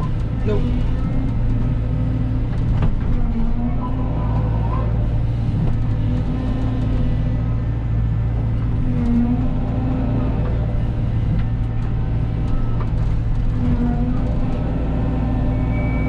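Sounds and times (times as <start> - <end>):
excavator diesel engine running: 0.0 - 16.0
hydraulic whines: 15.2 - 16.0.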